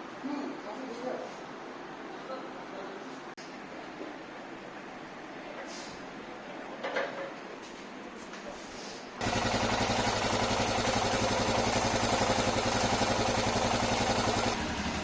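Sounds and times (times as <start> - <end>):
fast metallic ticking: 9.2 - 14.6
motorcycle engine running: 9.2 - 15.0.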